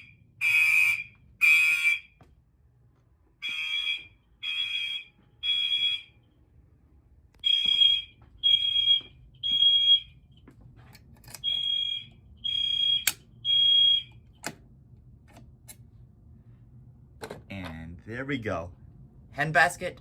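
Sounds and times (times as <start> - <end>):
fire alarm horns blasting: 0.0 - 2.3, 3.4 - 6.8, 7.4 - 10.4, 11.3 - 14.4.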